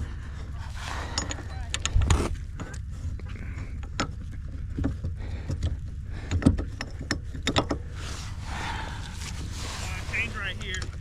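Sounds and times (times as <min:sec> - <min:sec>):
low steady rumble: 0:00.0 - 0:11.0
metal chain knocks and clicks: 0:01.0 - 0:02.0, 0:06.3 - 0:07.8.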